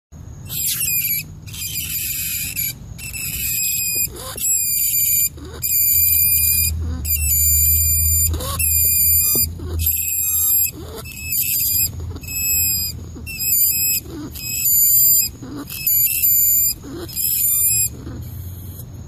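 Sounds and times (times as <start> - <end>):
low steady hum: 0.2 - 19.0
rat squeaking: 0.3 - 19.0.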